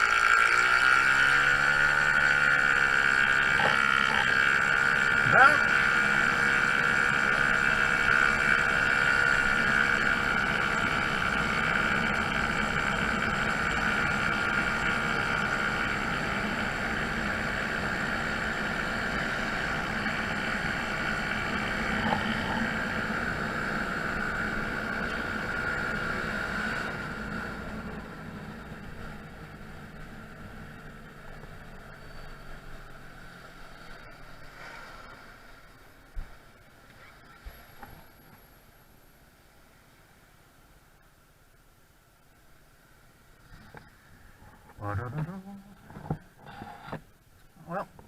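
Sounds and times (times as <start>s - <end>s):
scooter engine running: 0.0s - 34.4s.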